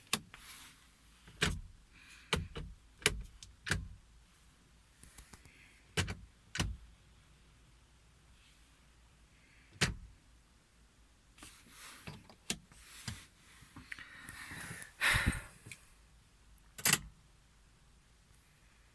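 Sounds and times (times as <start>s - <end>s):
car door and controls clicking: 0.0s - 0.4s, 1.3s - 4.0s, 5.9s - 6.8s, 9.7s - 10.1s, 12.0s - 13.2s, 16.7s - 17.2s.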